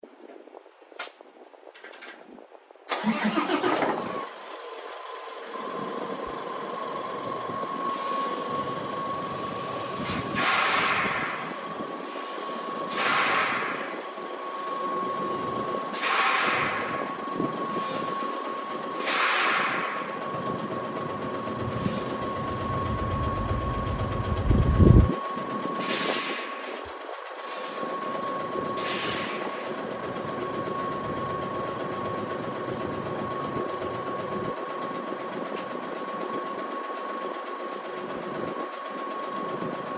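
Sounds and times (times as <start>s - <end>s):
steady whine: 5.2s - 39.9s
air brake hisses: 7.8s - 8.6s, 9.2s - 14.0s, 15.9s - 20.2s, 21.7s - 22.2s, 25.8s - 26.8s, 27.4s - 27.9s, 28.8s - 29.8s
low rumble: 21.4s - 25.2s.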